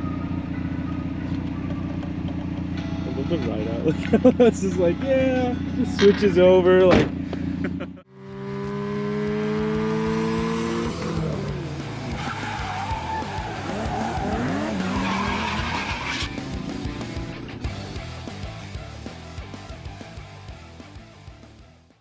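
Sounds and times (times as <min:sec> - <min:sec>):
car engine revving high: 0:07.6 - 0:18.0
tires squealing and skidding: 0:10.1 - 0:17.7.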